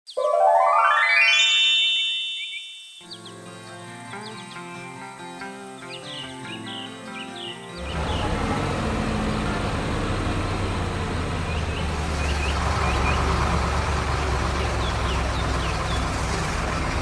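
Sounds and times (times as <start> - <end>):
small birds chirping: 2.4 - 17.0
heavy diesel machinery running: 7.8 - 17.0.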